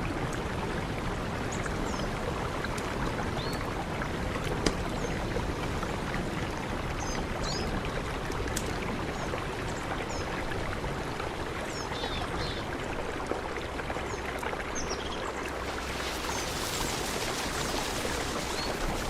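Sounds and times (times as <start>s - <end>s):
river rushing: 12.4s - 19.0s.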